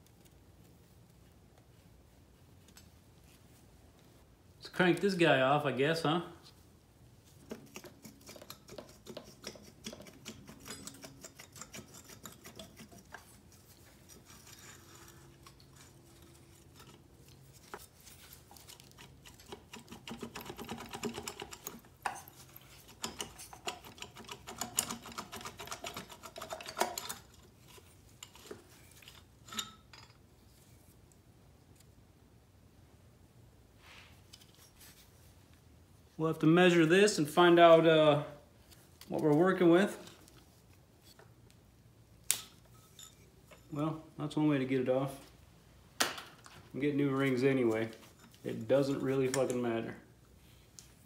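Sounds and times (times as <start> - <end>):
metal tools and parts clinking: 7.4 - 30.4, 42.4 - 43.8, 47.6 - 49.6.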